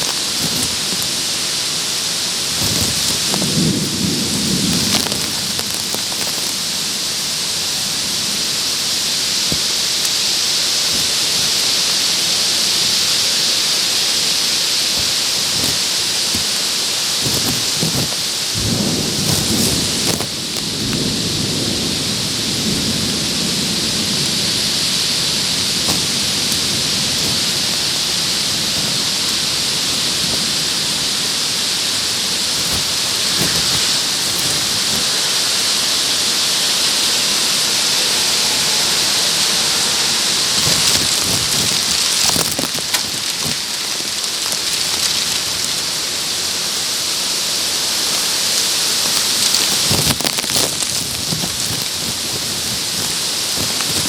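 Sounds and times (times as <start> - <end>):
drops pattering on plastic bag: 0.0 - 7.9, 9.3 - 21.6, 24.1 - 36.4, 39.4 - 46.1, 48.0 - 54.0
torrential rain hiss: 0.0 - 54.0
low thunder rumbling: 0.3 - 10.0, 17.6 - 43.6.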